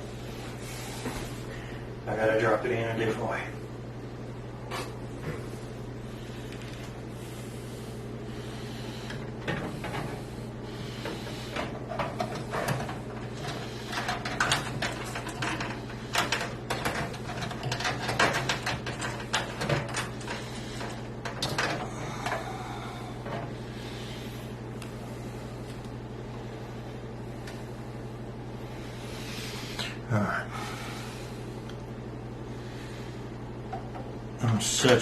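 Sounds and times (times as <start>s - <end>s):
steady low hum: 0.0s - 35.0s
motherboard clicking and scraping in case: 11.0s - 22.4s.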